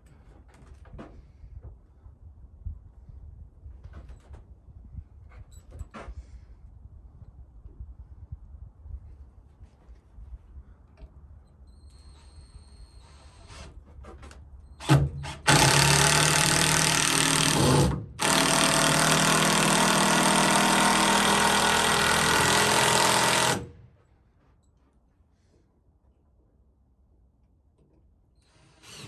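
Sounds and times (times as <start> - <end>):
power tool running: 14.8 - 23.8, 28.6 - 29.0.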